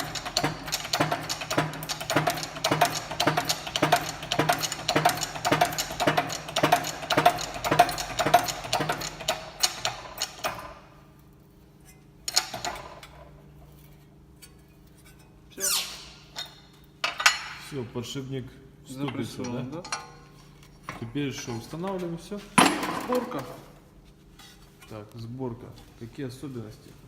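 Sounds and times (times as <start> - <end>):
rapid metallic knocking: 0.0 - 9.9.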